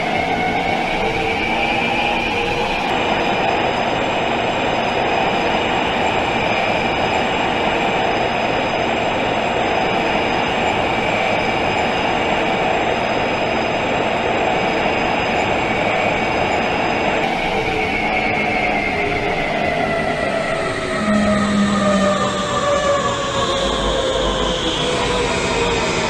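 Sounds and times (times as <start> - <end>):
high-pitched motor whine: 13.0 - 26.0.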